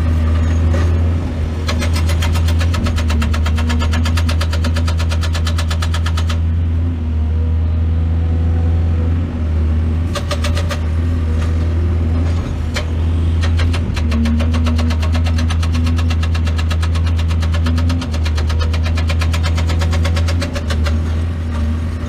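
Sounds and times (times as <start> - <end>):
diesel engine droning: 6.3 - 22.0.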